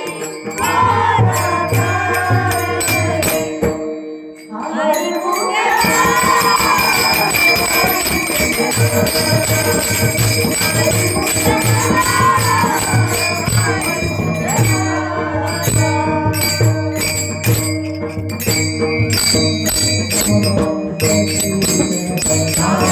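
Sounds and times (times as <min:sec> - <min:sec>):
person singing: 0:00.0 - 0:03.8, 0:04.5 - 0:17.6, 0:21.7 - 0:22.9
jingling percussion: 0:00.0 - 0:22.9.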